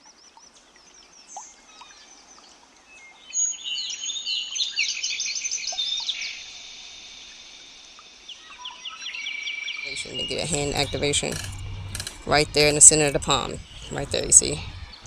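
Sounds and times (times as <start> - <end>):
birds chirping: 5.7 - 15.0.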